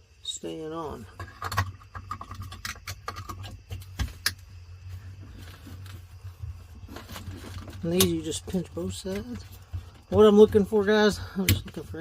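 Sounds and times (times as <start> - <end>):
steady low hum: 0.0 - 12.0
plastic clicks and rattles: 1.1 - 4.4.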